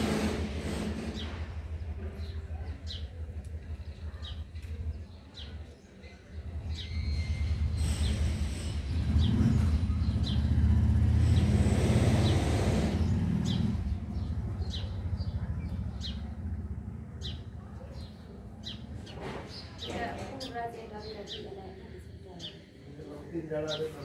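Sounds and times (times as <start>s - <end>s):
bird chirping: 13.0s - 16.6s.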